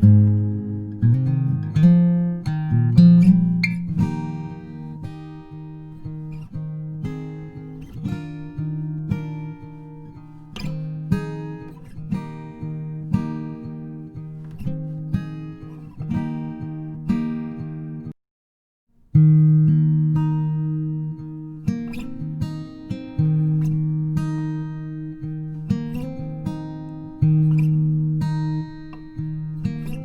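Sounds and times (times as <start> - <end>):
acoustic guitar music: 0.0 - 18.2, 18.9 - 30.0.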